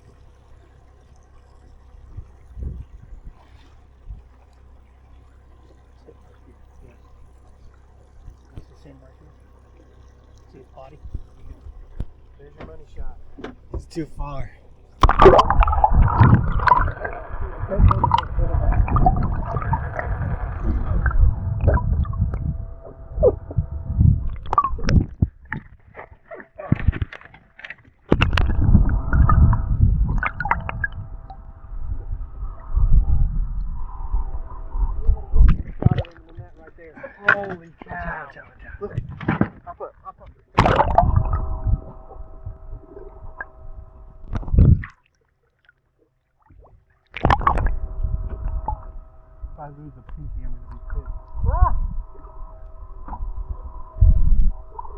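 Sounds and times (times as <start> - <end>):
low rumble: 0.0 - 39.2, 40.4 - 45.0, 47.2 - 54.9
boat engine humming: 0.0 - 54.9
water gurgling and sloshing: 0.0 - 54.9
sudden loud noise: 10.9 - 25.7, 28.1 - 38.2, 40.6 - 44.9, 47.2 - 54.9
short knocks and clicks: 11.0 - 14.0
loud low thump: 11.0 - 25.7, 40.6 - 44.8.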